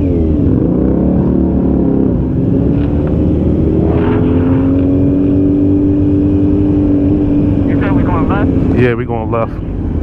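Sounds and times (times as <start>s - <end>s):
motorcycle engine accelerating: 0.0s - 9.1s.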